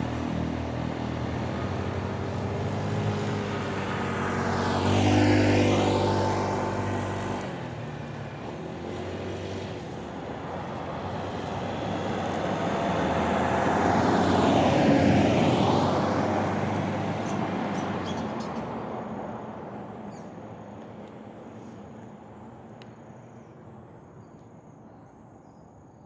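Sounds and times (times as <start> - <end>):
vehicle engine passing: 0.0 - 17.8
tyre noise of passing vehicle: 0.0 - 25.2.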